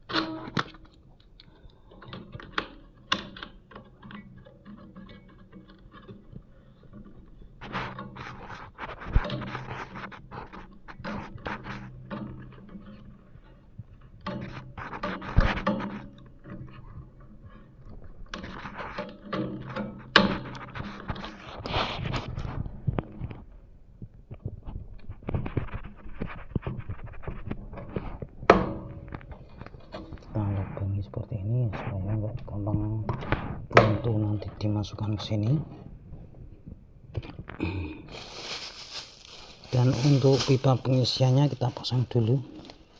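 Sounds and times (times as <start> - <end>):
hand tools clicking and scraping: 0.0 - 22.2, 38.1 - 42.9.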